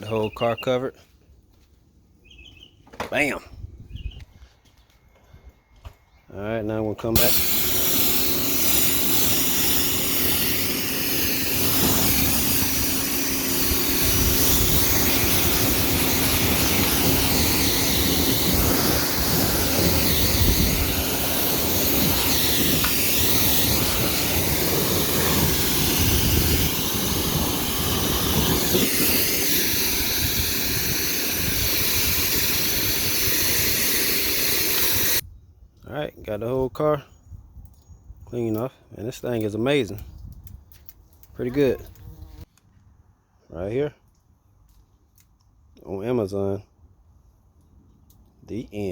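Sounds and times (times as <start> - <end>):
pressure washer spraying water: 7.2 - 35.2.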